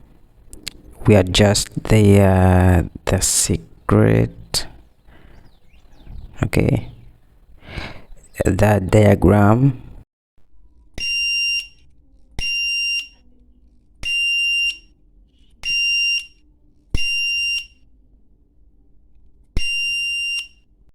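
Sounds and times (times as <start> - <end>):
alarm switching click: 11.0 - 11.8, 12.4 - 13.2, 14.0 - 14.9, 15.6 - 16.4, 17.0 - 17.8, 19.6 - 20.6
high-pitched alarm buzzer beeps: 11.0 - 11.8, 12.4 - 13.2, 14.0 - 16.4, 17.0 - 17.8, 19.6 - 20.7.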